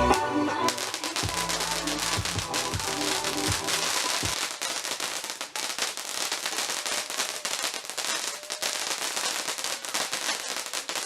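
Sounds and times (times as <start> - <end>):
song with steady beat: 0.0 - 4.4
fireworks crackling: 0.0 - 11.0.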